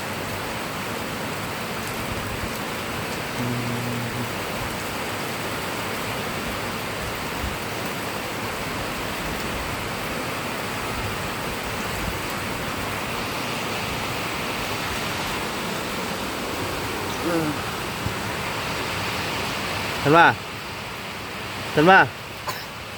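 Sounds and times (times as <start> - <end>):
heavy rain: 0.0 - 22.9
brief low hum: 3.4 - 4.4.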